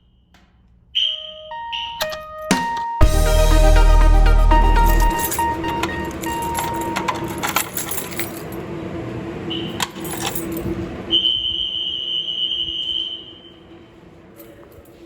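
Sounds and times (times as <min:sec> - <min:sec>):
steady high alarm tone: 0:01.0 - 0:07.6.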